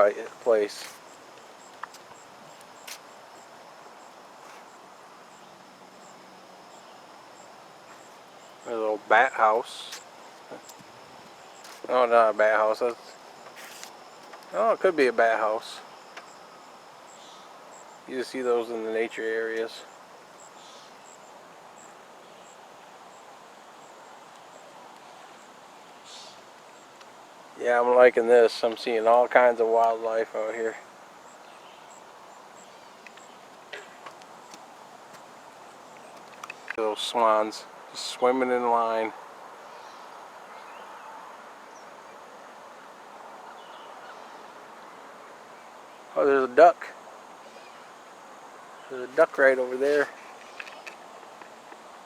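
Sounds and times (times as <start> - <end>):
high insect chirps: 0.0 - 52.0
steady hiss: 0.0 - 52.0
brief rustle: 13.4 - 14.5, 49.8 - 51.8.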